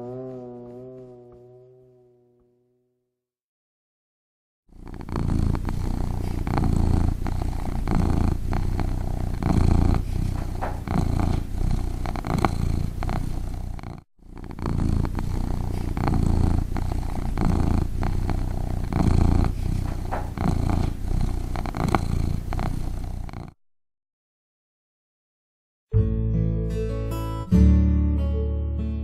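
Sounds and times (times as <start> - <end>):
cat purring: 0.0 - 2.9, 4.7 - 23.6.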